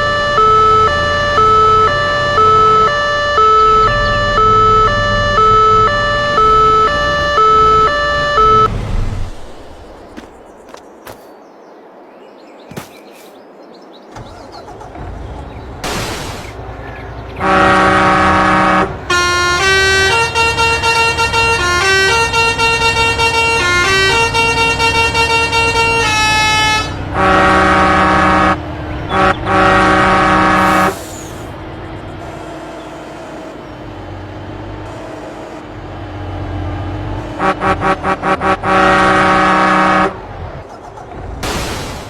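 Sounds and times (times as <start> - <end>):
multi-tone musical truck horn: 0.0 - 8.7, 17.4 - 30.9, 37.0 - 40.3.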